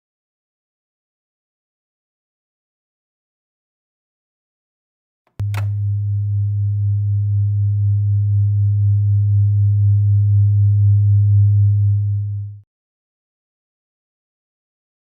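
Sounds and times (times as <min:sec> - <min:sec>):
sharp click: 0:05.3 - 0:05.9
low electronic hum: 0:05.4 - 0:12.6.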